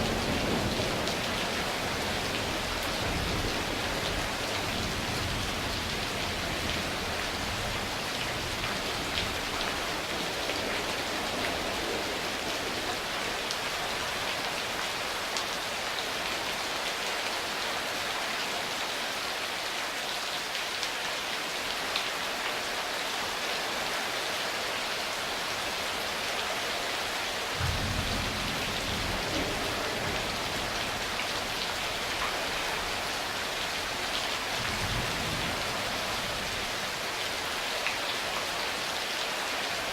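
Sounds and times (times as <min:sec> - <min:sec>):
low rumble of thunder: 0:00.0 - 0:13.4, 0:27.6 - 0:33.2, 0:33.8 - 0:37.0
steady rain falling: 0:00.0 - 0:39.9.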